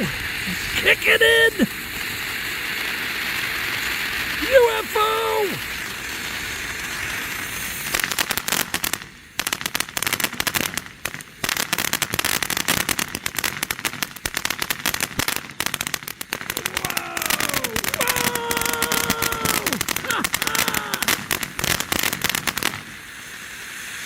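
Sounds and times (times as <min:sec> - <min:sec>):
firework fountain hissing: 0:00.0 - 0:24.0
firework whistles: 0:00.0 - 0:24.0
rapid crackling pops: 0:00.0 - 0:24.0.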